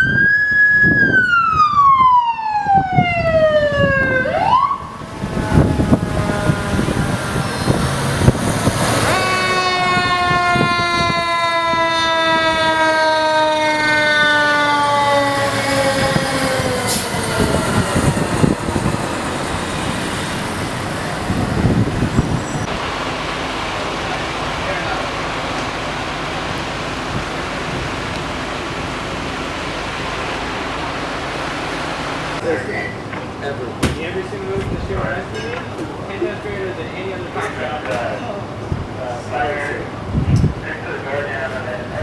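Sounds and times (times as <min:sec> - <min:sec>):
fire engine siren wailing: 0:00.0 - 0:33.1
trucks running: 0:00.0 - 0:42.0.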